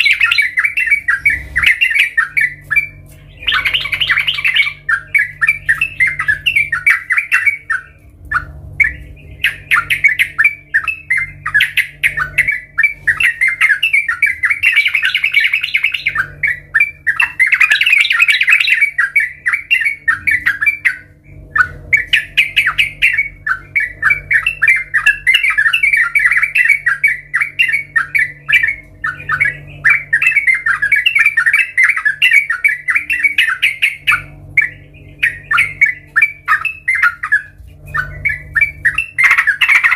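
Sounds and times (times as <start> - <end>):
bird chattering song: 0.0 - 39.9
faint low hum: 0.0 - 39.9.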